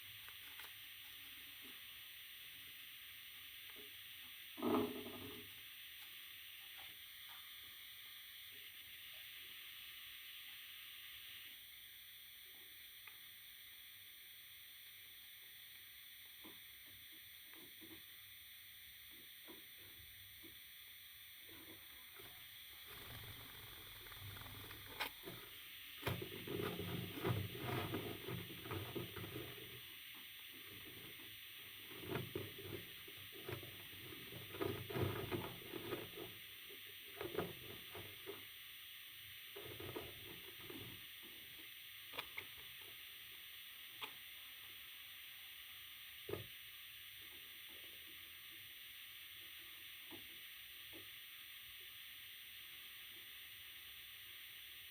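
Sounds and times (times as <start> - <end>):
faint steady hiss: 0.0 - 54.9
rustling and scratching: 21.5 - 29.9, 30.6 - 36.4.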